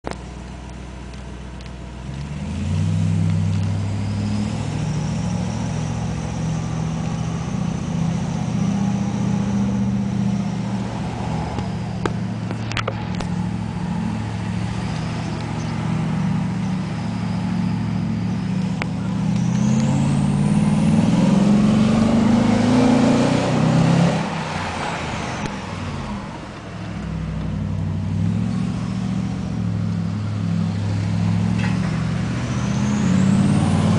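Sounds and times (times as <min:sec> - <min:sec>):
deep car exhaust rumble: 0:00.0 - 0:33.9
high turbo whistle: 0:03.9 - 0:12.4, 0:13.0 - 0:26.0.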